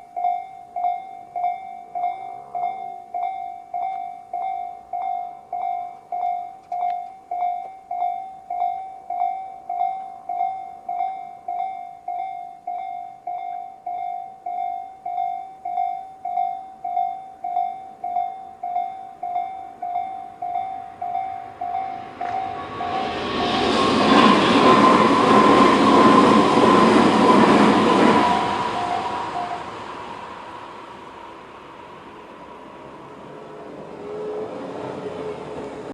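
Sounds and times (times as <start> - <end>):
level crossing alarm bell: 0.0 - 29.8
approaching train rushing: 16.9 - 35.9.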